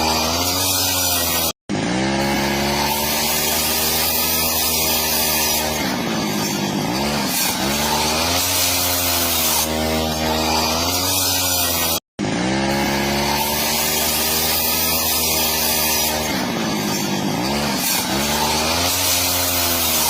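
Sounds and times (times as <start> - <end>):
power tool motor cutting wood: 0.0 - 20.0.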